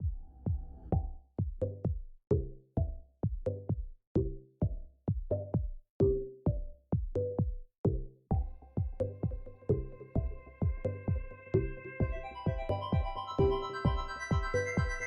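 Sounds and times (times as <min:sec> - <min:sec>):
electronic music with drum-machine beat: 0:00.0 - 0:15.0.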